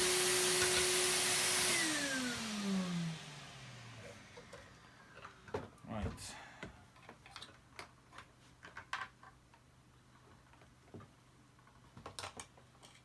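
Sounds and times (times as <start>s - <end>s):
clicks of plastic parts handled: 6.6s - 9.7s, 10.3s - 13.0s.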